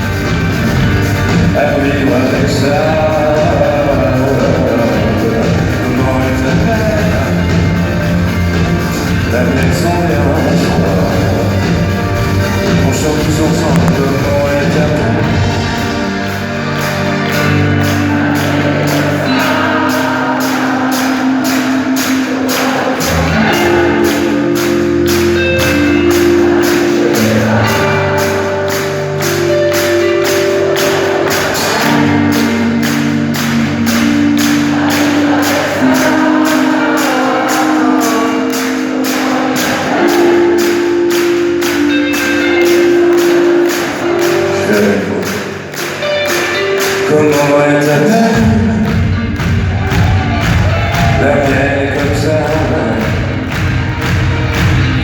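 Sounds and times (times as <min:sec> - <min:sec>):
live pop band playing: 0:00.0 - 0:55.0
shaken percussion: 0:00.0 - 0:55.0
voices singing along: 0:12.8 - 0:46.0.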